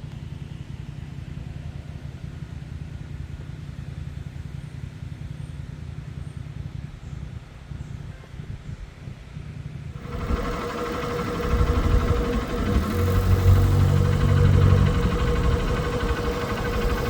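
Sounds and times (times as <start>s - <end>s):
engine running: 10.0s - 17.0s.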